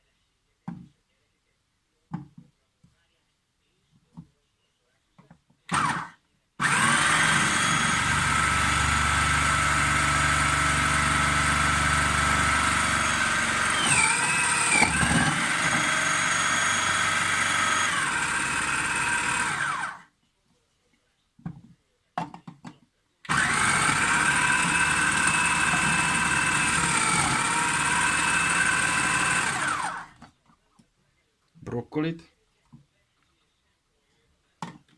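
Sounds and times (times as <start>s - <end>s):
food chopper motor running: 5.7s - 20.0s, 23.3s - 30.2s.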